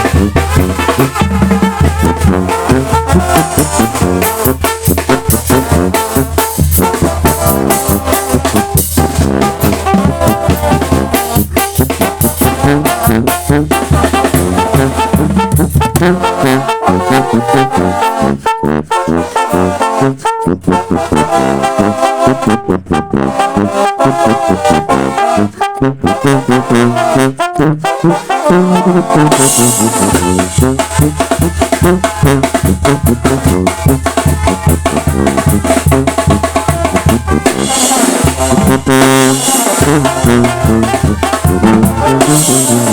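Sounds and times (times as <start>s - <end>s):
brass band playing: 0.0s - 42.9s.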